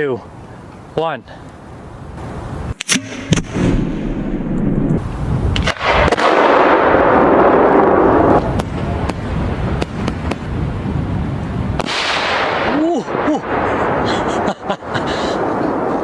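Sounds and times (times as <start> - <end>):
firework rushing hiss: 2.2 - 14.0
firework cracks: 2.7 - 14.1
firework bangs: 2.8 - 14.0.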